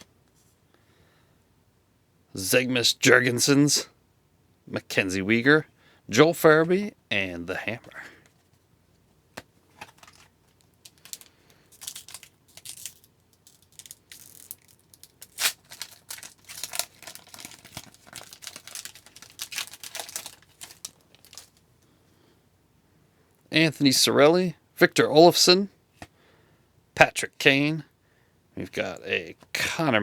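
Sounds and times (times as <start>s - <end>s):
cards handled: 9.3s - 21.6s
card pack wrapper crinkling: 9.7s - 21.6s.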